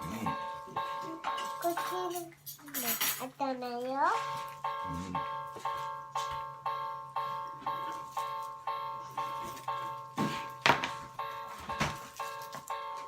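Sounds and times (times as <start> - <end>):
toy crossing warning bell: 0.0 - 13.0.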